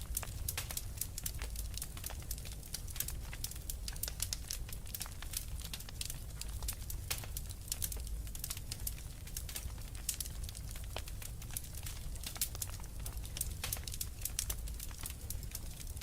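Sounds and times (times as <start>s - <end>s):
fire crackling in a fireplace: 0.0s - 16.0s.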